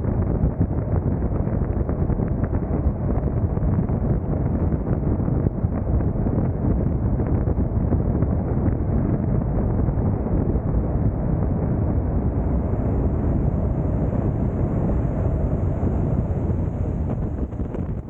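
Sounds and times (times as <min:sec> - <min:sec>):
wind and road noise: 0:00.0 - 0:18.0
wind on microphone: 0:00.0 - 0:18.0.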